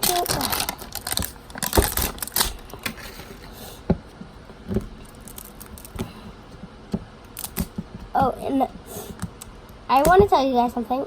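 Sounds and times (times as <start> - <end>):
plastic wrapping tearing: 0.0 - 3.5.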